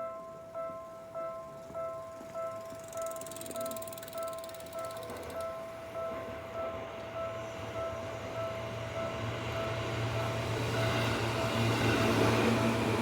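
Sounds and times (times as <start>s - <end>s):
train rumble: 5.0s - 13.0s.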